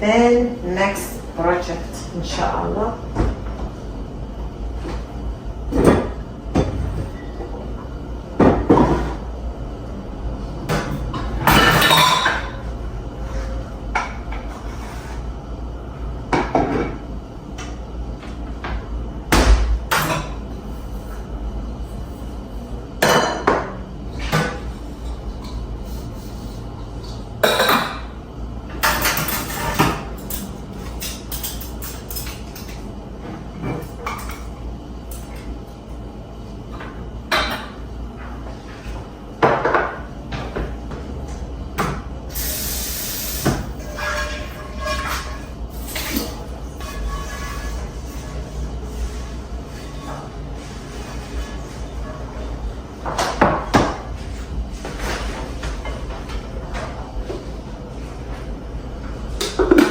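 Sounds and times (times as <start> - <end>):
dishes and cutlery clattering: 10.7 - 12.6, 27.1 - 28.0, 28.8 - 32.8
dishes rattling: 11.4 - 12.6.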